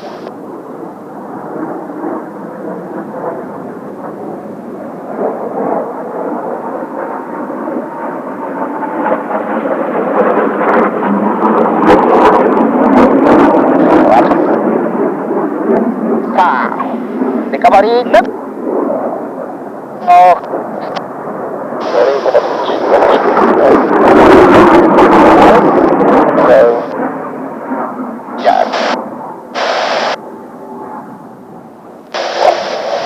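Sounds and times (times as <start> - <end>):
jet engine rumble: 0.0 - 33.0
rough sharp crackles: 28.4 - 29.0, 29.6 - 30.2, 32.1 - 33.0.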